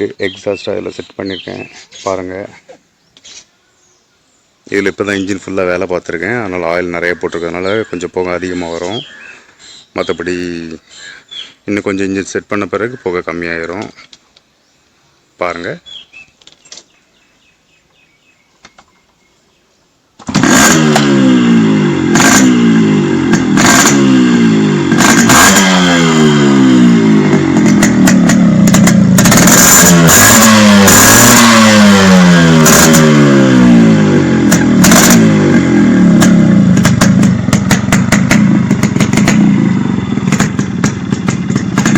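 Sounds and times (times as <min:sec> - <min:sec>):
exhaust crackles: 0:20.2 - 0:41.9
motorcycle engine revving: 0:20.2 - 0:41.9.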